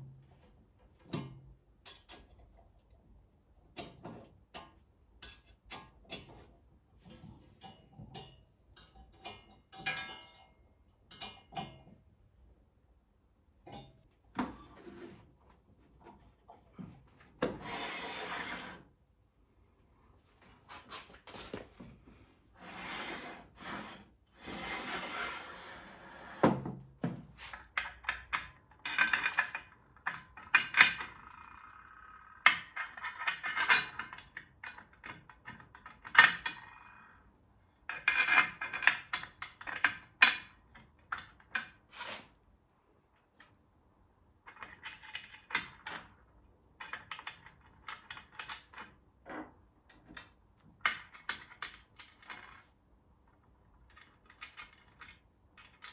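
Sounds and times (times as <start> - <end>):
table saw parts rubbing and scraping: 17.4 - 19.0, 22.5 - 26.6, 41.8 - 42.4.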